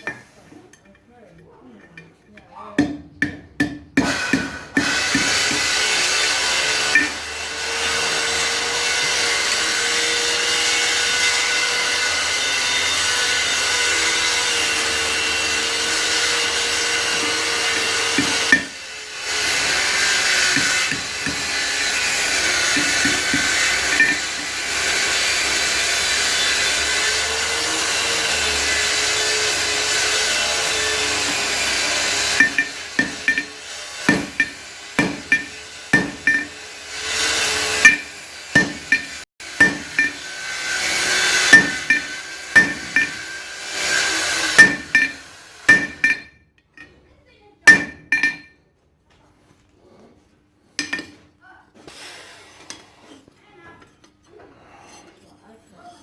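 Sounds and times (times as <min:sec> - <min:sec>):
hammer striking metal: 0:02.8 - 0:07.4, 0:14.3 - 0:27.5, 0:28.5 - 0:46.4, 0:47.7 - 0:48.6, 0:50.8 - 0:51.2
electric grinder on steel: 0:04.0 - 0:46.3.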